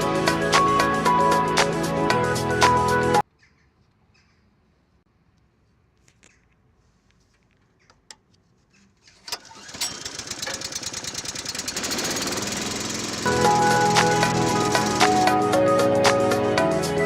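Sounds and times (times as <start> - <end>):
music: 0.0 - 3.2, 13.3 - 17.0
small engine pulsing: 9.2 - 15.5.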